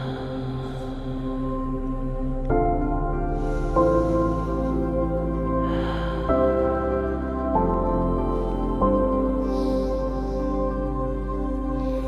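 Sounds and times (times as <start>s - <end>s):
soft ambient music: 0.0s - 12.0s.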